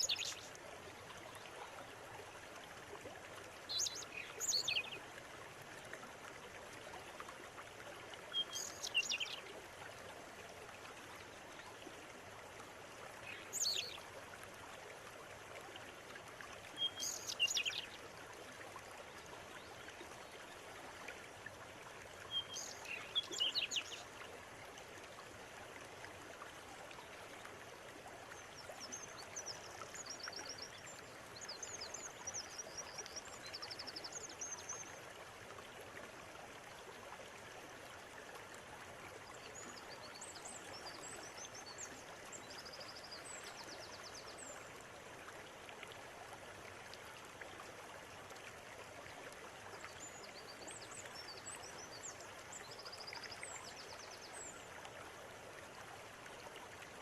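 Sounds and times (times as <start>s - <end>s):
river flowing: 0.0s - 57.0s
birds chirping and twittering: 3.7s - 4.9s, 8.5s - 9.4s.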